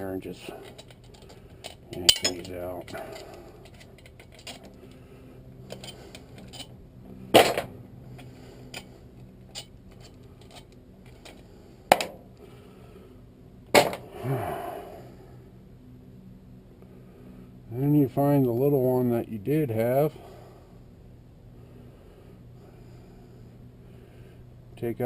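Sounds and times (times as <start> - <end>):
metal parts clinking and clanking: 0.4 - 4.8, 5.7 - 6.7, 9.5 - 12.1.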